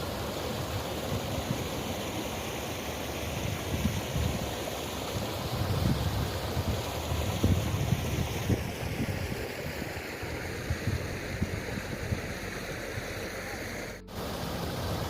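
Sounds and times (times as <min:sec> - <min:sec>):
flowing river water: 0:00.0 - 0:15.0
wind buffeting microphone: 0:05.2 - 0:13.4.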